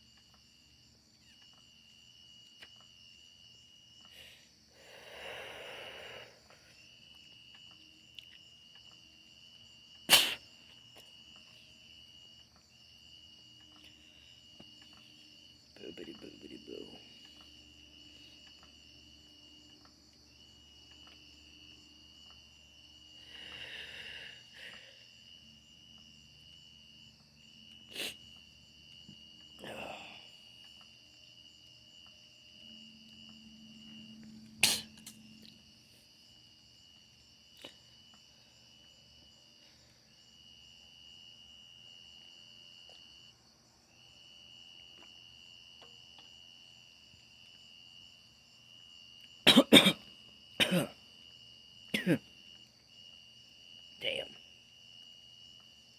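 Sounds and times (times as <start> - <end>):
crickets trilling: 0.0 - 55.9
person coughing: 34.6 - 34.9, 49.5 - 51.0, 51.9 - 52.3
sharp click: 34.6 - 35.2.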